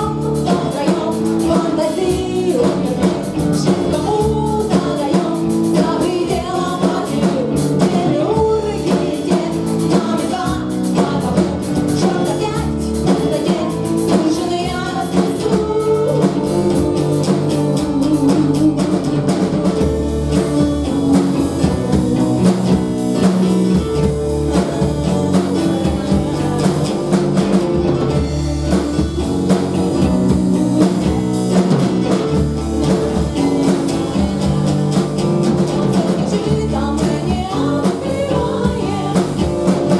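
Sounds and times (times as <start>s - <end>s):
bass guitar: 0.0s - 39.9s
drum kit beat: 0.0s - 39.9s
electric guitar: 0.0s - 39.9s
person singing: 0.0s - 39.9s.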